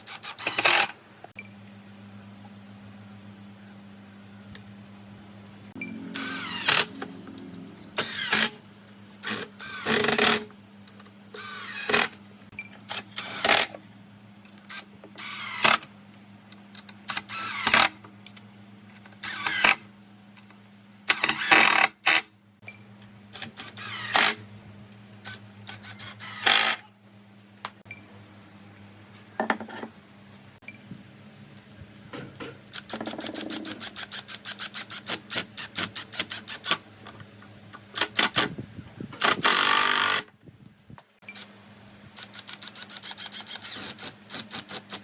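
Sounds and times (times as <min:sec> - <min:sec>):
steady low hum: 0:00.0 - 0:21.6.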